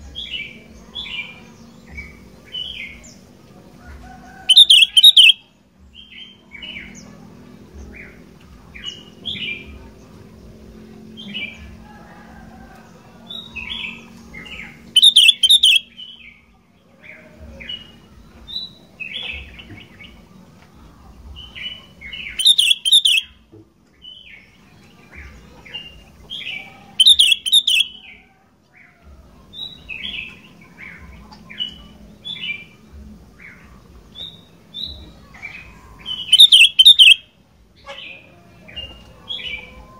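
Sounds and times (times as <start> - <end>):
harsh bird calls: 0.1 - 5.4, 13.3 - 16.4, 21.4 - 23.4, 25.2 - 28.2, 33.5 - 39.9
bird singing chirpy phrases: 4.5 - 5.4, 13.4 - 16.4, 21.4 - 23.4, 25.5 - 28.0, 33.5 - 37.2.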